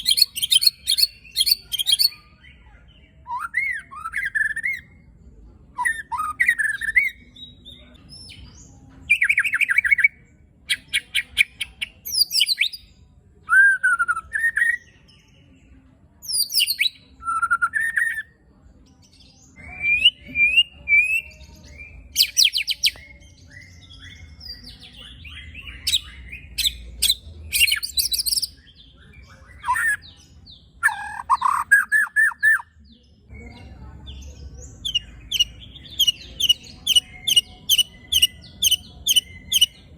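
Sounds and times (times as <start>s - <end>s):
bird singing: 0.0s - 5.0s, 19.4s - 39.9s.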